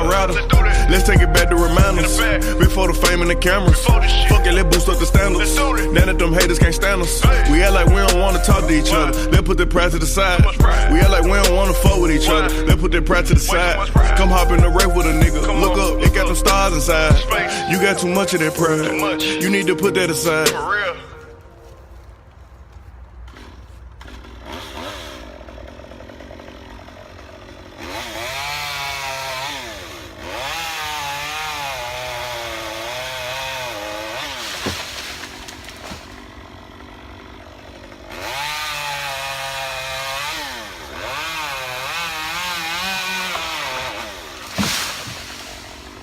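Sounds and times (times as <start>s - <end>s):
chainsaw running: 0.0s - 21.4s, 23.0s - 46.0s
sharp crack: 34.2s - 36.3s, 43.3s - 46.0s.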